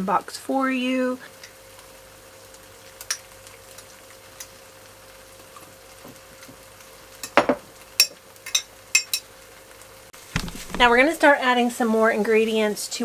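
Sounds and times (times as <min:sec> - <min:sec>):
faint steady background noise: 0:00.0 - 0:13.0
kitchenware scraping: 0:10.4 - 0:11.3.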